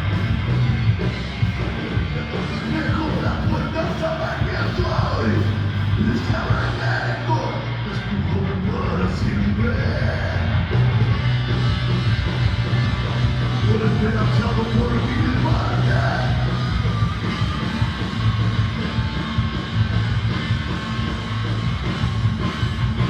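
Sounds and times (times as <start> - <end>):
live rock band playing: 0.0 - 23.0
person singing or yelling: 2.2 - 10.6, 13.6 - 16.7.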